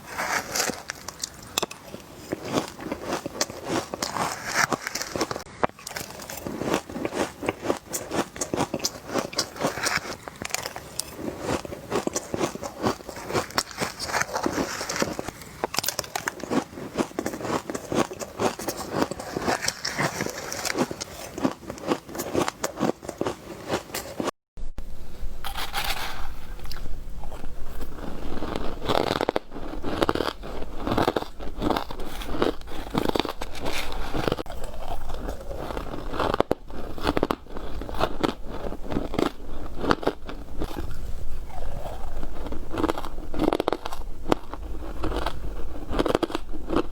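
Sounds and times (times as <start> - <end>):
chewing crunchy frozen ice: 0.0 - 24.3, 26.5 - 46.9
low hum: 24.6 - 37.0.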